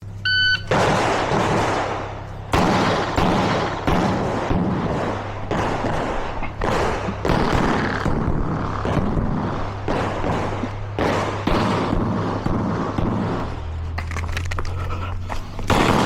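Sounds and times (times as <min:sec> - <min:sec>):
shot timer beep: 0:00.2 - 0:00.7.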